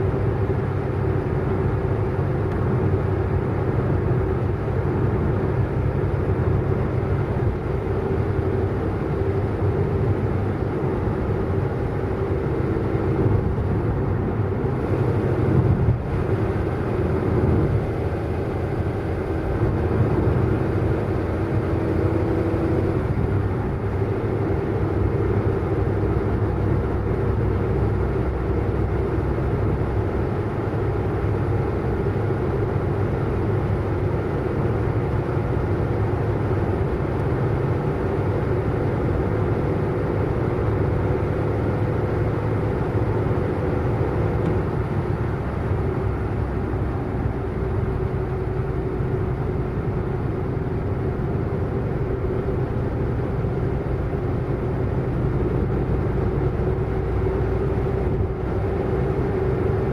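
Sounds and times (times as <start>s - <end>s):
car engine and road noise: 0.0s - 59.9s.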